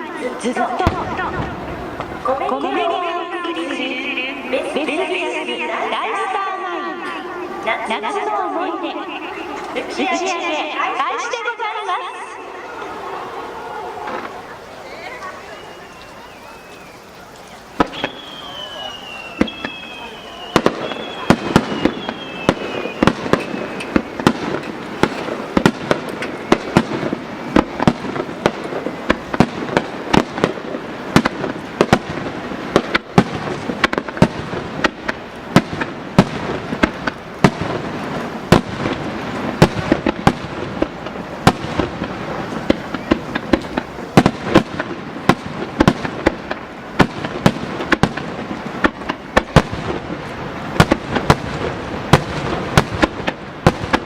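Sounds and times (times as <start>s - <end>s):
fireworks crackle: 0.0s - 54.0s
fireworks shells bursting: 12.2s - 54.0s.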